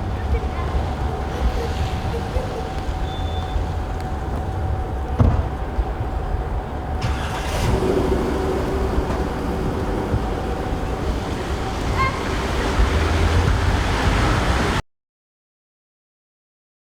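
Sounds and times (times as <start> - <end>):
vehicle engine rumbling: 0.0 - 14.8
single knock: 5.2 - 5.6.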